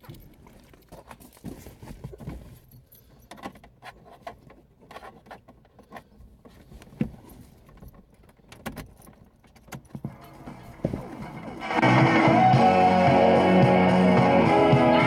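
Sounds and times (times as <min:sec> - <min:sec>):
keys jangling: 0:07.2 - 0:11.6.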